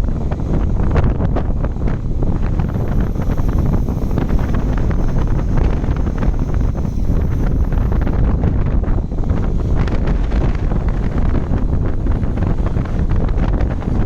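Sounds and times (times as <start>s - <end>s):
wind buffeting microphone: 0.0s - 14.0s
excavator diesel engine running: 2.3s - 9.8s.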